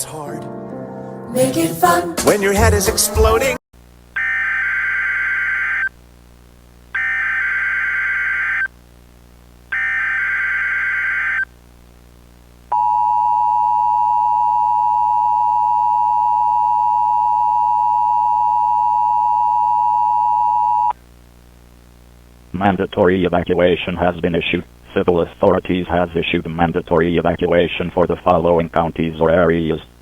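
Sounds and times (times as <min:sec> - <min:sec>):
screeching digital data tones: 0:04.2 - 0:05.9, 0:07.0 - 0:08.7, 0:09.7 - 0:11.5.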